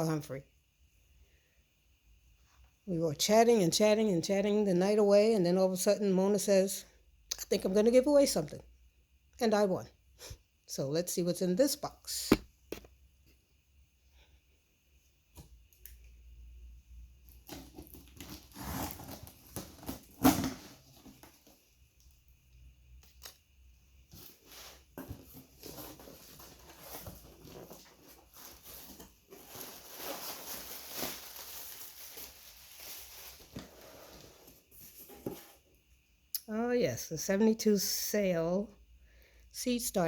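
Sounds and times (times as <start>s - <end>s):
packaging rustling and crinkling: 17.3s - 21.7s, 24.1s - 35.6s
box tearing open: 17.4s - 21.2s.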